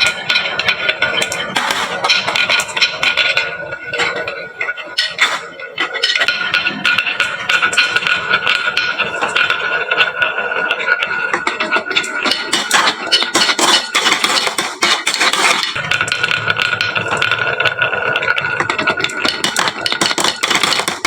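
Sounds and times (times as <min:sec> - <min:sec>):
marbles clattering down wooden run: 0:00.0 - 0:21.0.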